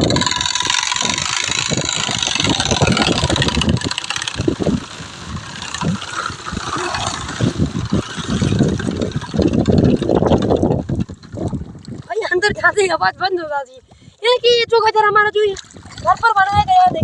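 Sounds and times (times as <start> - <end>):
bicycle bottle silencer rattling: 0.0 - 12.6.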